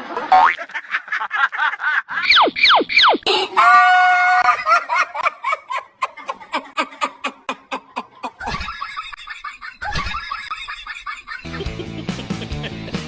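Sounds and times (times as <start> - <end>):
background music: 11.4 - 13.0.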